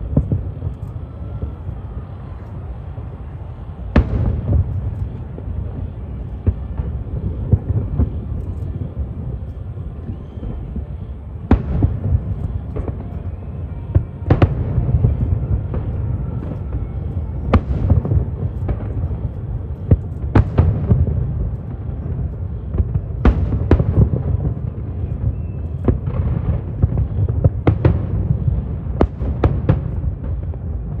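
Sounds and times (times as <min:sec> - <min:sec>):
fireworks bangs: 0:00.0 - 0:31.0
low rumble of fireworks: 0:00.0 - 0:31.0.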